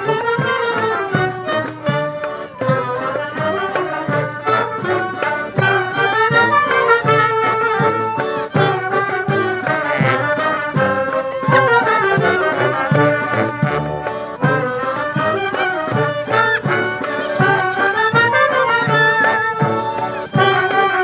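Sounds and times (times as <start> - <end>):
wind instrument melody: 0.0 - 21.0.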